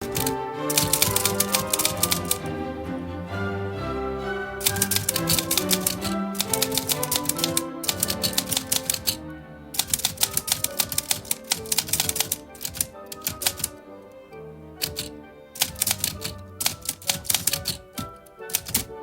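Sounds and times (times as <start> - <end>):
typewriter keys clicking: 0.0 - 2.4, 4.6 - 9.2, 9.8 - 13.8, 14.8 - 18.9
soft background music: 0.0 - 19.0.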